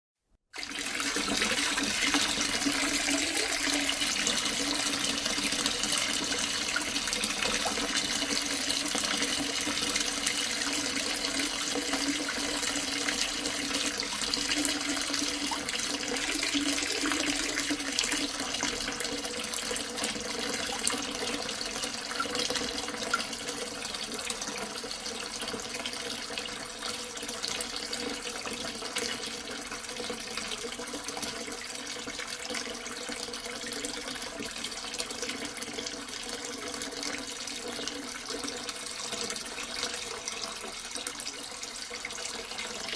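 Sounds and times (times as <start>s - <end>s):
tap water pouring into sink: 0.6s - 42.9s.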